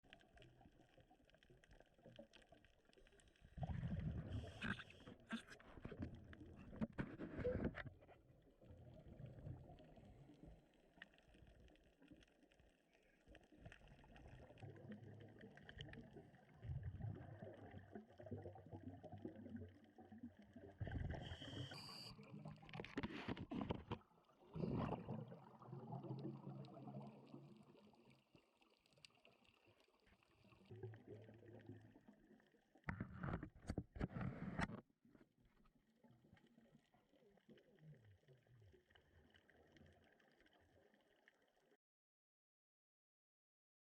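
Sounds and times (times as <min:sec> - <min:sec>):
muffled underwater gurgling: 0:03.6 - 0:08.0.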